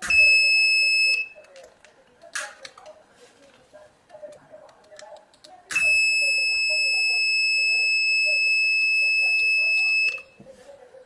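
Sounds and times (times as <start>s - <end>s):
high-pitched alarm buzzer: 0.0s - 1.4s, 5.7s - 10.4s.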